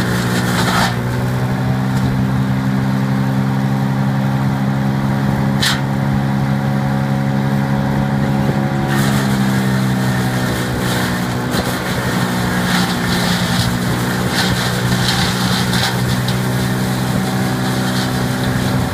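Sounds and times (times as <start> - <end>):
wood chipper droning: 0.0 - 18.9
wood chipping crackling and clattering: 10.9 - 16.8.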